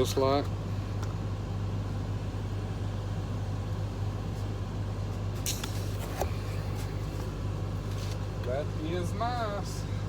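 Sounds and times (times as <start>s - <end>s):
low machine hum: 0.0s - 10.0s.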